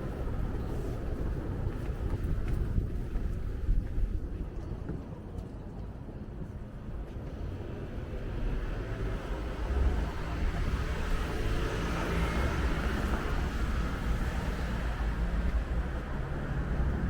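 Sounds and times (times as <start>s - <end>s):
low traffic rumble: 0.0s - 17.0s
passing vehicle: 7.4s - 17.0s.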